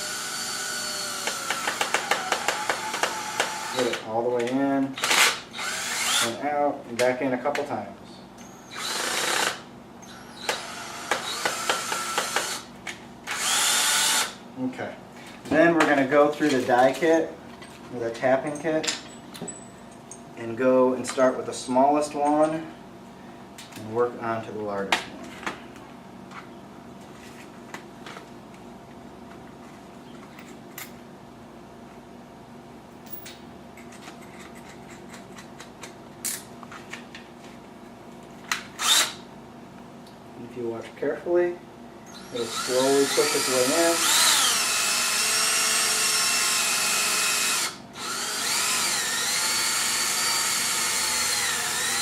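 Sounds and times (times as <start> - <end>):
power drill whirring: 0.0 - 3.9, 5.0 - 6.4, 8.5 - 12.7, 13.3 - 14.4, 38.8 - 39.2, 42.1 - 52.0.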